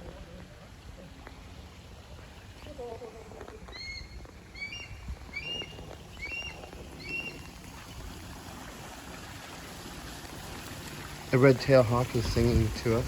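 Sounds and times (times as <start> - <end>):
small waterfall splashing: 0.0 - 3.7, 5.1 - 13.0
hawk calling: 3.7 - 7.5.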